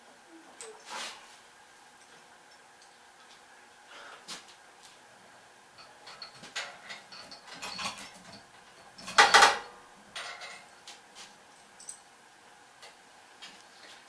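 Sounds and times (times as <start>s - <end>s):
metal parts clinking and clanking: 5.8s - 10.7s.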